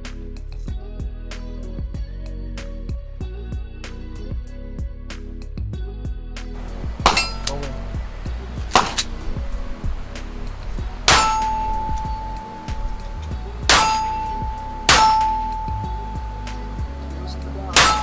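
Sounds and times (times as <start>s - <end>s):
pistol shots: 6.6s - 10.3s
steel target clanging: 6.6s - 18.0s.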